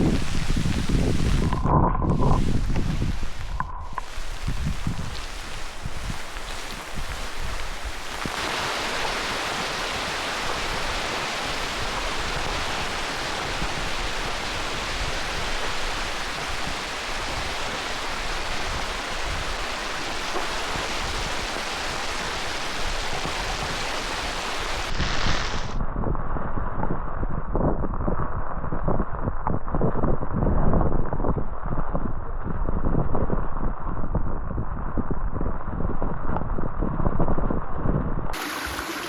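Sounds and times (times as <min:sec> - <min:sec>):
water rushing: 0:00.0 - 0:25.7, 0:38.4 - 0:39.0.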